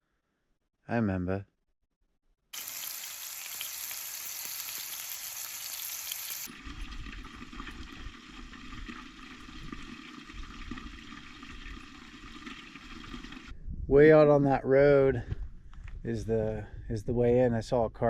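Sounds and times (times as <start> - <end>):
bacon sizzling in a frying pan: 2.6 - 6.5.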